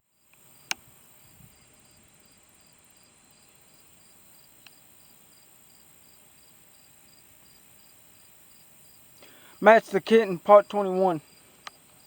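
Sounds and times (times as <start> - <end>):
faint cricket chirping: 0.0 - 12.0
faint click: 0.3 - 0.8, 4.6 - 4.8, 11.6 - 11.9.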